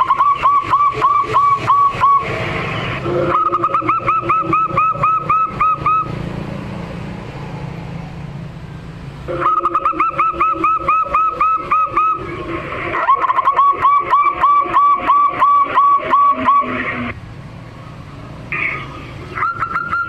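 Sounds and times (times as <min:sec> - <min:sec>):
dove cooing: 0:00.0 - 0:02.3, 0:03.0 - 0:06.1, 0:09.3 - 0:12.2, 0:12.9 - 0:16.8
steady low hum: 0:00.0 - 0:19.7.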